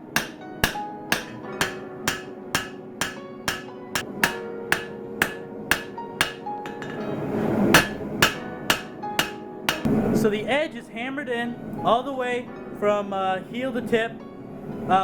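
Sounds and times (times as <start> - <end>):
hammer striking steel on anvil: 0.0 - 10.0.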